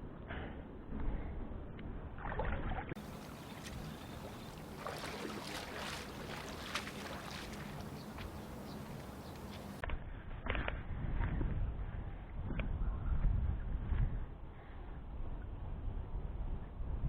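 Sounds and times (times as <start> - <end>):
wind noise on microphone: 0.9 - 17.0
water lapping and splashing: 2.2 - 9.8
small irregular splashes and knocks: 2.2 - 9.9.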